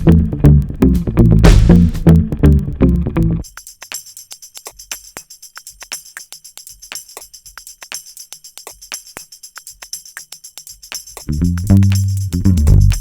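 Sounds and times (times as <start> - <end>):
tambourine-like jingle hits: 3.4 - 13.0.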